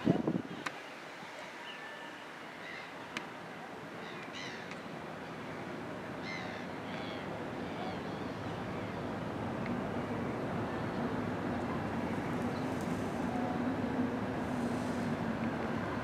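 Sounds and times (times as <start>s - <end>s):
low engine-like hum: 5.5s - 16.0s
birds calling: 6.2s - 9.1s.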